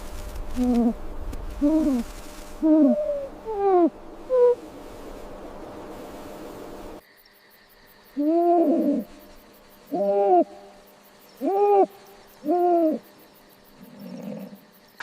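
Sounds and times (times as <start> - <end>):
hoot-like bird calls: 2.6 - 4.6, 8.2 - 9.2, 9.9 - 10.7, 11.4 - 13.1.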